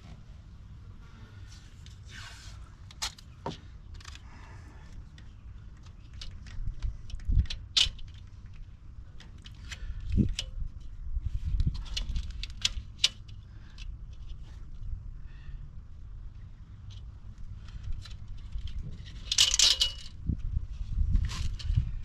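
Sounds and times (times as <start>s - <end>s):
metal parts clicking and clanking: 3.9s - 4.2s, 5.1s - 10.9s, 11.5s - 14.4s, 16.8s - 20.2s.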